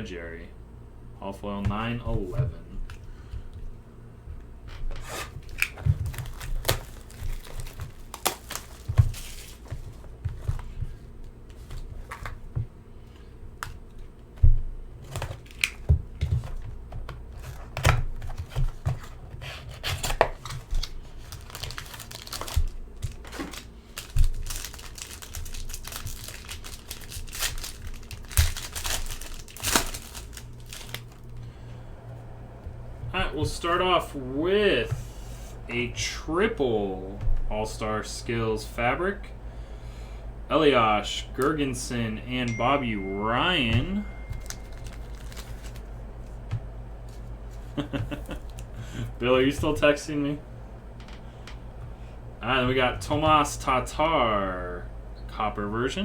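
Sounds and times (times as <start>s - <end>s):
wrapping torn and crinkled: 5.3s - 10.0s, 19.7s - 31.4s, 44.3s - 46.4s.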